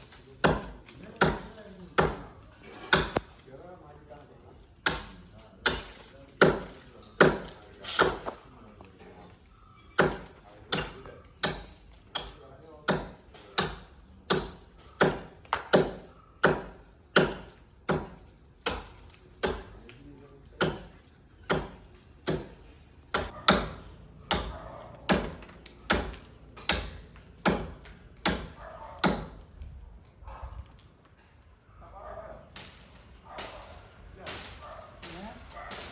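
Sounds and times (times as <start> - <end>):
axe chopping into tree trunk: 2.9 - 3.3, 4.9 - 8.4, 21.5 - 29.4.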